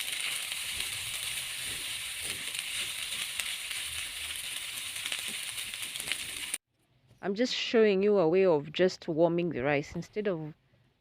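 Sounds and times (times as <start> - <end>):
food sizzling in a frying pan: 0.0 - 6.6.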